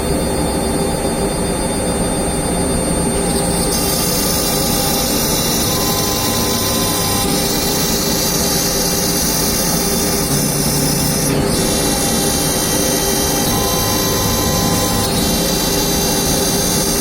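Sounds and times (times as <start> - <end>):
router spindle whine and hiss: 0.0 - 17.0.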